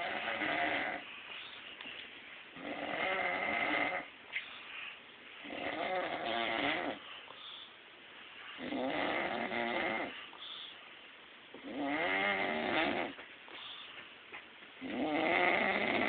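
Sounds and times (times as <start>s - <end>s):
man snoring: 2.6s - 4.1s, 5.5s - 7.0s, 8.6s - 10.1s, 11.7s - 13.1s, 14.9s - 16.0s.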